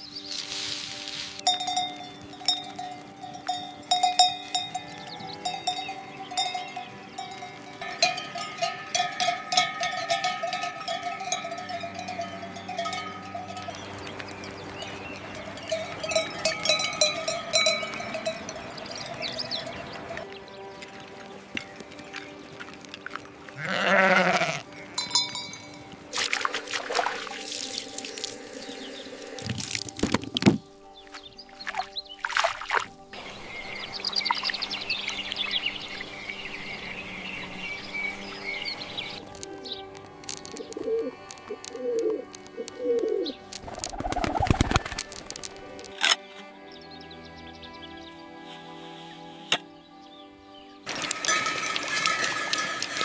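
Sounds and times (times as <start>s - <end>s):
animal bells clanking: 1.4s - 20.3s, 23.0s - 29.1s, 33.1s - 46.1s, 50.8s - 53.0s
goat bleating: 23.6s - 24.7s.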